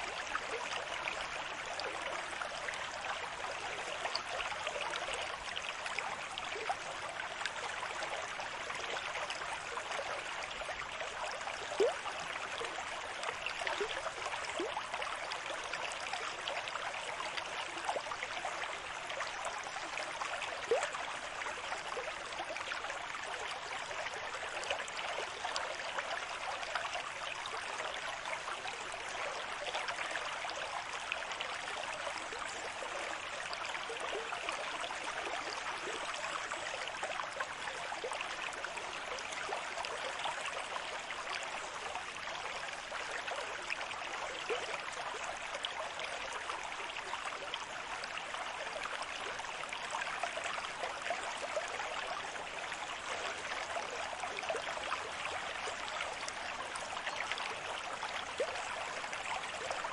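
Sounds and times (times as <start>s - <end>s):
rushing water: 9.4s - 59.9s.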